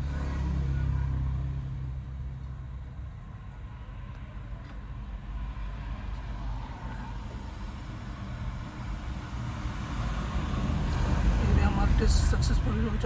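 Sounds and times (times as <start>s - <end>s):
diesel engine idling: 10.2s - 13.0s.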